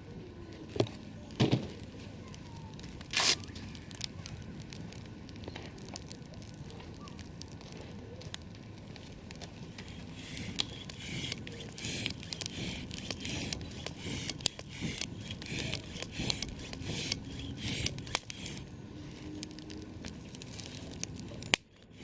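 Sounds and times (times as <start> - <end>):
campfire crackling and popping: 0.0 - 22.0
rhythmic scraping crunches: 0.8 - 22.0.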